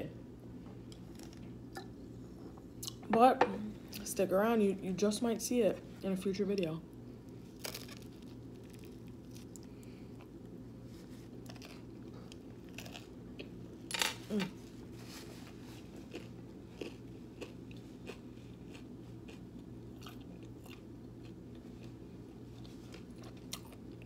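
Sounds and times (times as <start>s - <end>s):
steady low hum: 0.0s - 24.0s
chewing crunchy toasted sandwich: 7.2s - 13.6s, 14.8s - 24.0s.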